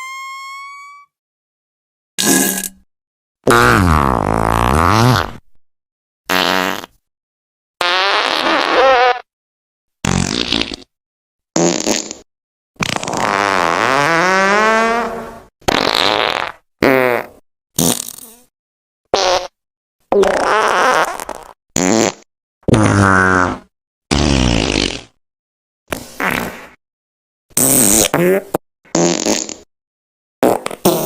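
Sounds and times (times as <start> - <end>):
fart sound effects: 3.5 - 5.4, 6.3 - 7.0, 7.8 - 9.3, 10.0 - 10.9, 11.6 - 18.5, 19.2 - 25.2, 25.9 - 26.8, 27.5 - 29.7, 30.4 - 31.0.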